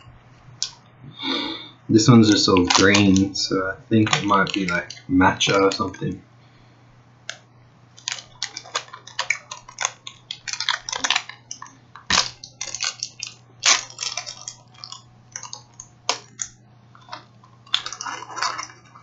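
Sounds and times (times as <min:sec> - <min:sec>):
plastic wrapper crinkling and tearing: 0:02.1 - 0:06.1, 0:08.0 - 0:19.0.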